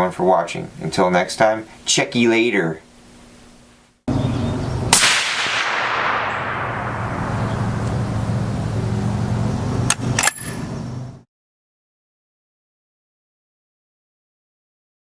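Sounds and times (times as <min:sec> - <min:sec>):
low steady hum: 0:00.0 - 0:11.2
loud sharp blast: 0:04.8 - 0:08.7
sharp cracks: 0:04.9 - 0:08.6.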